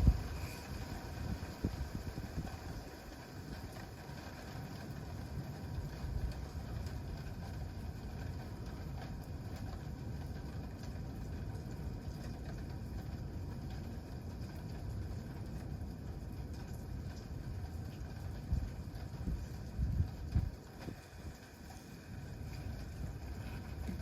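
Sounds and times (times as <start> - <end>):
campfire burning rumble: 0.0 - 24.0
fire crackles: 0.0 - 24.0.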